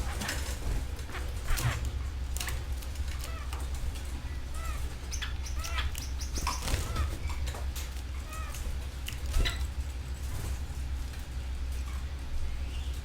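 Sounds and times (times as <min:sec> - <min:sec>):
wing flutters: 0:00.0 - 0:10.8
steady low hum: 0:00.0 - 0:13.0
canaries chirping: 0:03.2 - 0:08.7.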